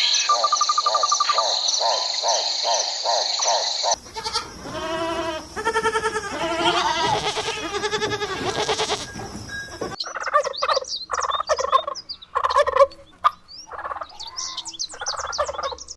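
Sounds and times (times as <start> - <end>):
turkey gobbling: 0.3 - 14.1
animal bleating: 4.0 - 10.0.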